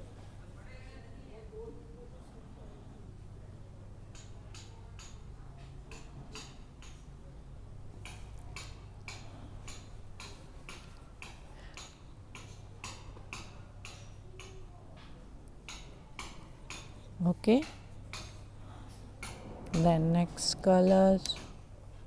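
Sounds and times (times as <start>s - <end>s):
steady low hum: 15.4s - 22.0s.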